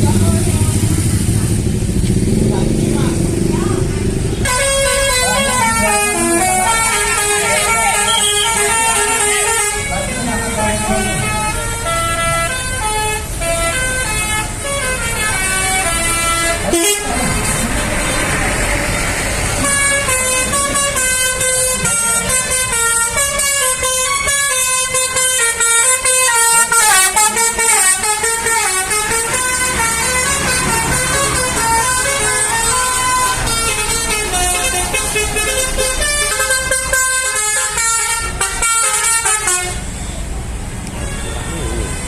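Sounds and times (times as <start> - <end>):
bus engine running: 0.0 - 42.0
multi-tone air horn tune: 4.4 - 17.6, 19.6 - 39.9.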